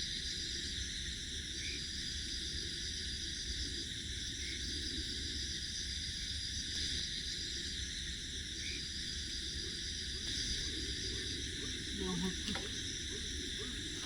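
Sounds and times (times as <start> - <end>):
night insects buzzing: 0.0 - 14.0.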